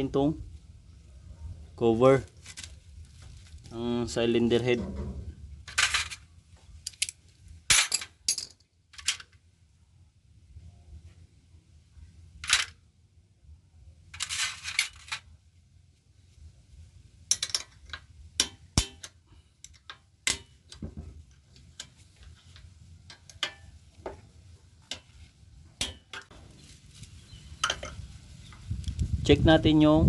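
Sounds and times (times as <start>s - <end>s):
metal parts rattling: 5.6s - 9.4s, 12.4s - 12.8s, 14.1s - 15.3s, 17.3s - 20.4s.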